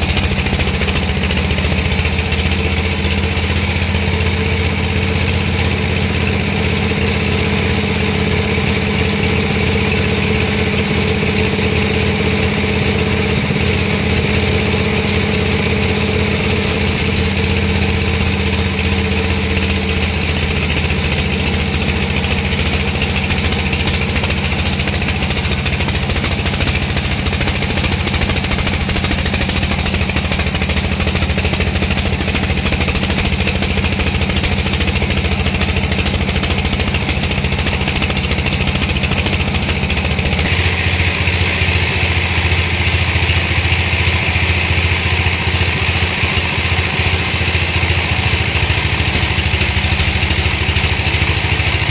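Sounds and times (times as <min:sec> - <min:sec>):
engine running steadily: 0:00.0 - 0:51.9
high hiss: 0:16.2 - 0:39.3, 0:40.9 - 0:43.4.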